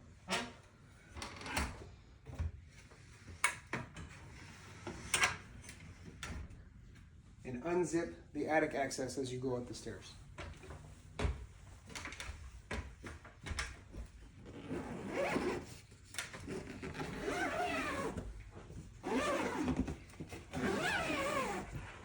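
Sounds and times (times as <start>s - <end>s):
zipper on fabric pulled open: 14.4s - 18.3s, 19.0s - 22.0s.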